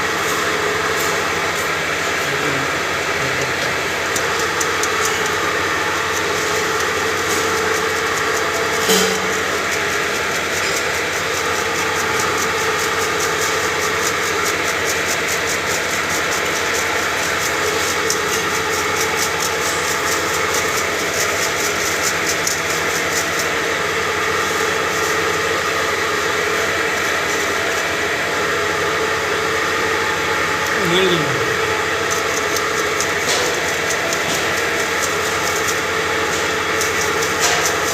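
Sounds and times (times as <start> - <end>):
hammer mill droning: 0.0 - 37.9.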